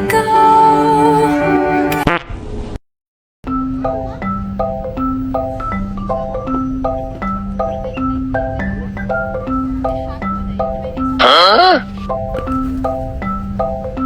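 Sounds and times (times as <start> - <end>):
bass line: 3.5 - 12.1
mallet percussion tune: 3.5 - 14.0.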